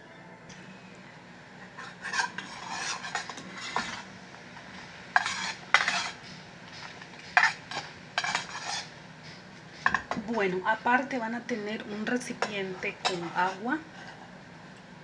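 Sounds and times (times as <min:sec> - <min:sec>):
utensil scraping frying pan: 0:01.6 - 0:09.0, 0:12.0 - 0:14.5.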